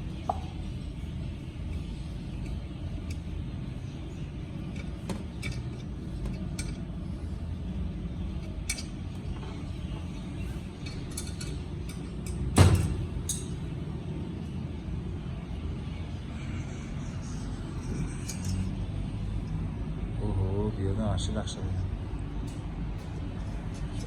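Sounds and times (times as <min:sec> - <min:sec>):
metal tools clinking: 0:10.8 - 0:13.6, 0:17.8 - 0:18.8.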